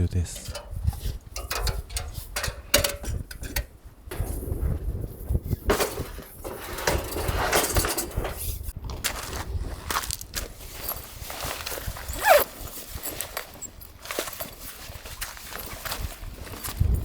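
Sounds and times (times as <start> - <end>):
wind buffeting microphone: 0.0 - 14.0, 14.9 - 17.0
camping gear clinking: 0.2 - 4.4, 5.3 - 17.0.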